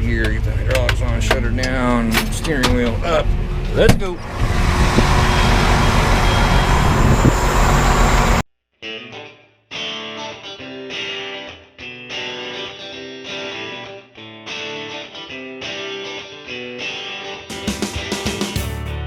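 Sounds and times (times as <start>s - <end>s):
engine and machinery noise: 0.0s - 8.4s
electric guitar music: 8.8s - 19.0s.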